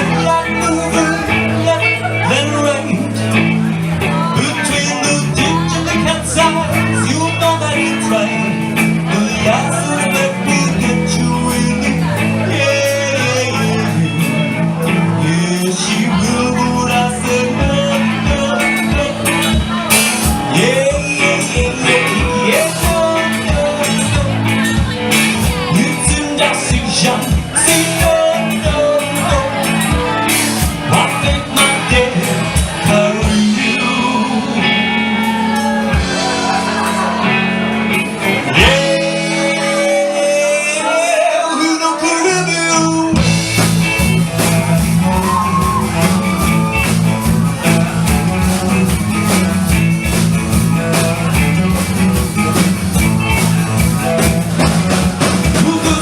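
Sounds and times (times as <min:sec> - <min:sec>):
live rock-blues band playing: 0:00.0 - 0:56.0
steady drum beat: 0:02.6 - 0:39.9, 0:43.1 - 0:56.0.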